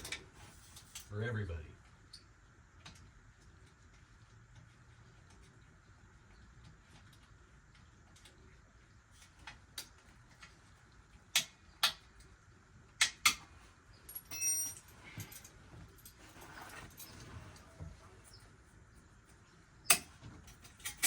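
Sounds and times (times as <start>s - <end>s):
metal tools clicking and clinking: 14.0s - 17.2s, 19.9s - 21.0s
high-pitched ringing squeak: 14.3s - 14.9s.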